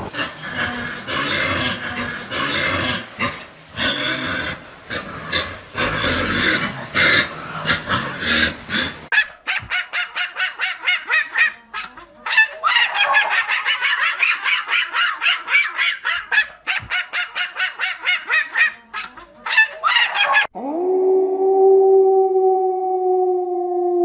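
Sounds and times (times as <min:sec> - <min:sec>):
waterfowl honking: 0:05.8 - 0:20.5.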